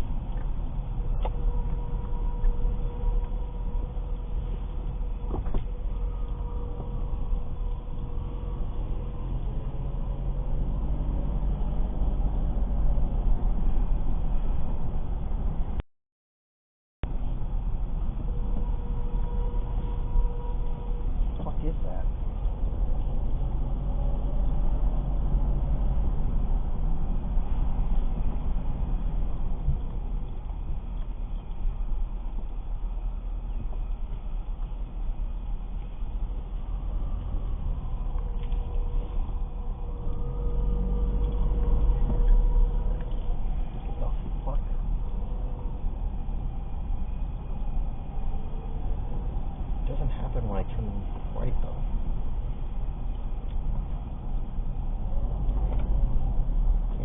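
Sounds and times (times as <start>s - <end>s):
low road rumble: 0.0s - 15.8s, 17.0s - 57.0s
faint steady squeak: 1.0s - 10.8s, 35.7s - 48.9s.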